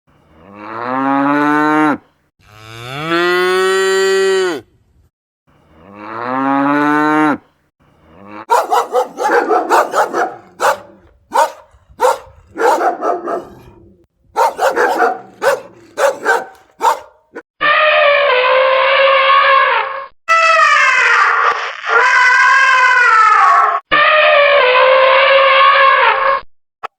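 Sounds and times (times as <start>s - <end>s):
cow mooing: 8.2s - 13.8s, 14.4s - 17.1s.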